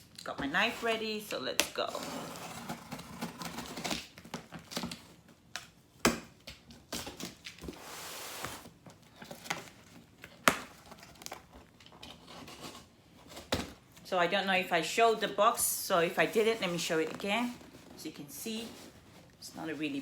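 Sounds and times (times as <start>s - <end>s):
packing tape tearing: 1.8s - 5.2s.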